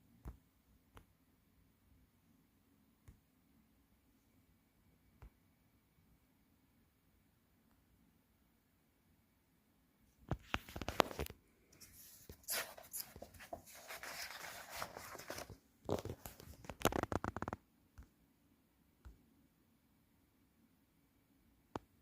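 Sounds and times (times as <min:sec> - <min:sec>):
packaging rustling: 0:10.7 - 0:17.2.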